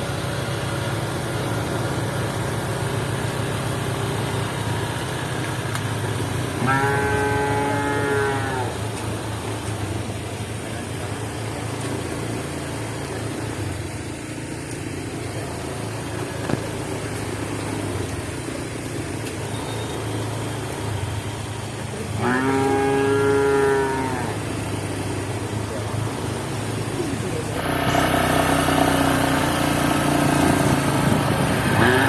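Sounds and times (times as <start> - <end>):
cow mooing: 6.6 - 8.8, 22.2 - 24.4, 31.7 - 32.0.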